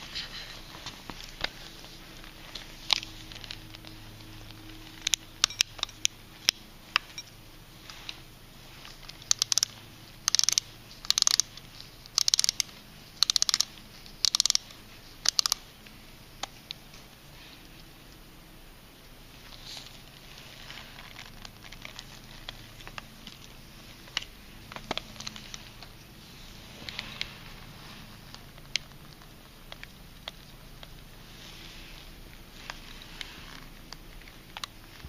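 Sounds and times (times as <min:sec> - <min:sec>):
mechanical alarm clock clicking: 0:04.9 - 0:07.3, 0:09.2 - 0:15.7.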